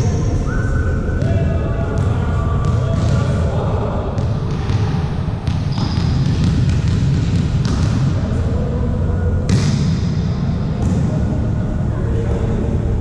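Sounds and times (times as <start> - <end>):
low rumble of the hall: 0.0 - 13.0
volleyballs hit and bouncing: 1.1 - 8.4, 9.4 - 11.4.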